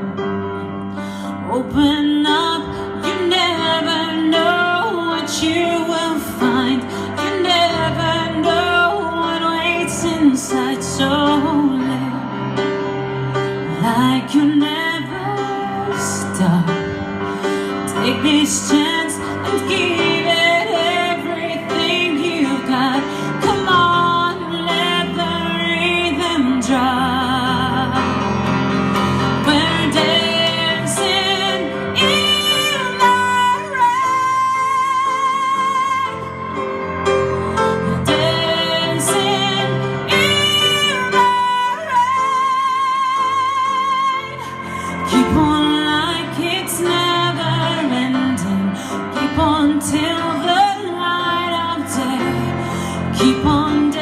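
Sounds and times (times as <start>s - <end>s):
woman singing: 1.3s - 12.4s, 13.7s - 17.1s, 17.7s - 28.3s, 29.2s - 54.0s.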